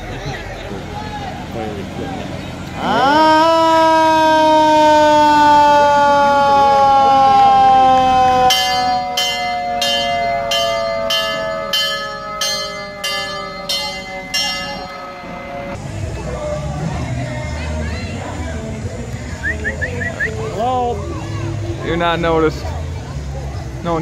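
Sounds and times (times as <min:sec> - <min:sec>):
mechanical siren wail: 0:02.8 - 0:15.8
bell clanging: 0:08.5 - 0:15.8.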